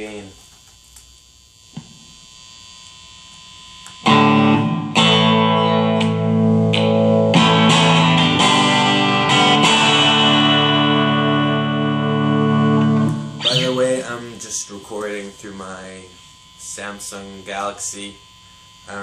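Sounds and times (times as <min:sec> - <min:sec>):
amp hum: 0:00.0 - 0:19.0
distorted electric guitar chords: 0:03.9 - 0:14.8.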